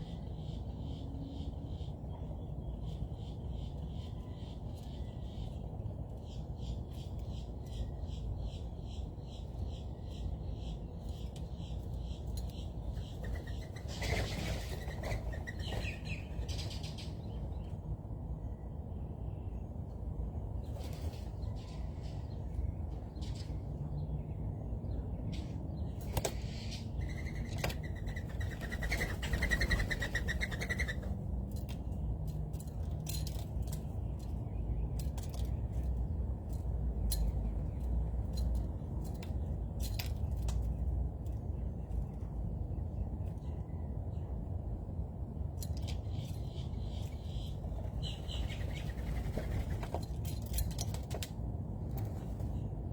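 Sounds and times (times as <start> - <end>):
wild birds calling: 26.2 - 31.1.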